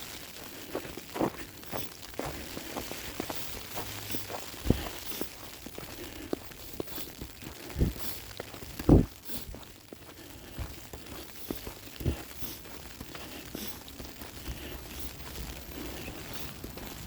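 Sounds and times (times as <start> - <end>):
falling snow ticking and crunching: 0.0 - 17.0.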